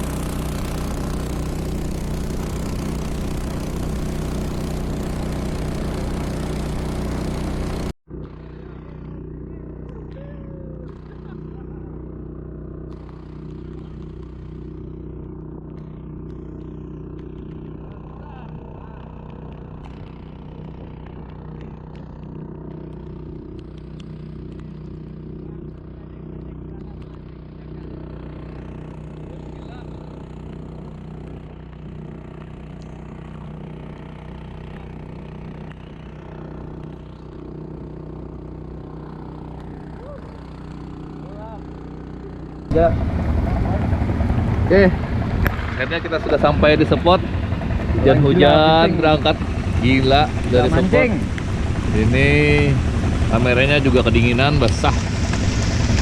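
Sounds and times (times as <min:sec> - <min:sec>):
small engine running: 0:00.0 - 0:56.0.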